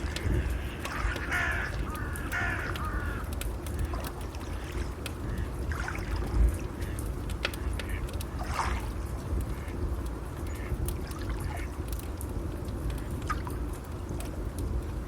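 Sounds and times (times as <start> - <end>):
bird calling: 0.0 - 3.9
fire crackling: 0.0 - 15.0.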